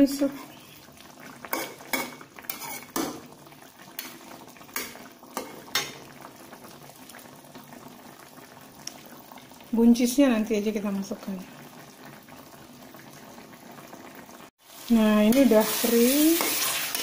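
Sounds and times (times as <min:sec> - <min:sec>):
sauce bubbling: 0:00.0 - 0:17.0
spatula knocking and scraping pan: 0:01.5 - 0:03.2.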